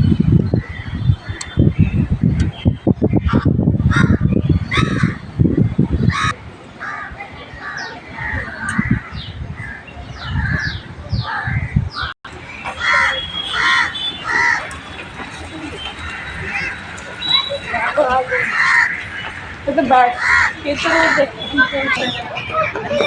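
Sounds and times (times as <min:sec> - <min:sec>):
harsh honking bird calls: 0:10.3 - 0:22.7.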